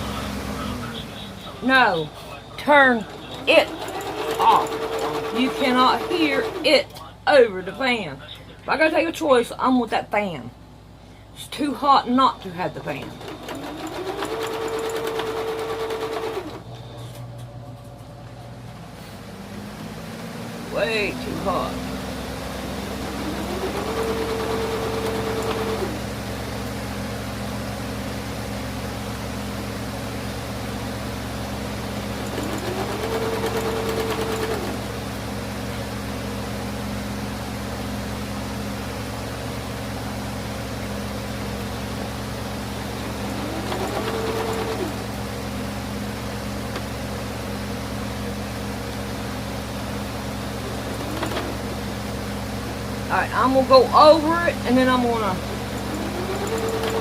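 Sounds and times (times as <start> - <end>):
sewing machine motor whine: 0.0 - 6.8, 11.9 - 17.4, 20.7 - 26.2, 31.6 - 35.1, 42.5 - 45.6, 49.9 - 57.0
electric fan humming: 0.0 - 57.0.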